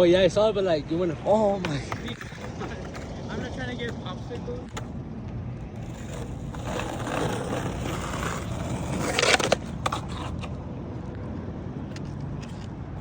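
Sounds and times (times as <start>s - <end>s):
skateboard wheels rolling: 0.0s - 13.0s
skateboard deck clattering: 1.3s - 5.0s, 5.6s - 10.6s.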